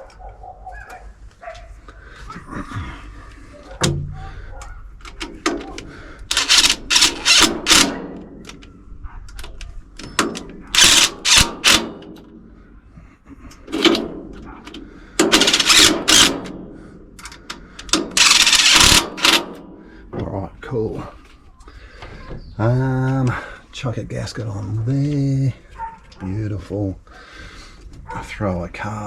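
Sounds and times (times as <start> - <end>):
hand tools clicking: 4.6 - 8.6, 9.4 - 11.9, 15.2 - 16.5, 17.2 - 19.6.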